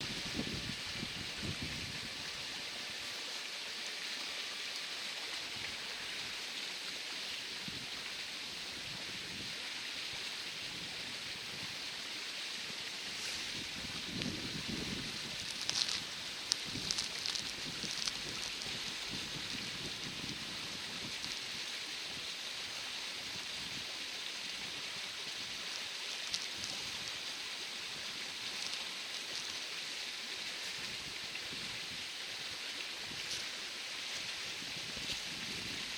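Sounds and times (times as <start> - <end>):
mountain stream flowing over stones: 0.0 - 35.9
small water splashes: 13.0 - 19.9.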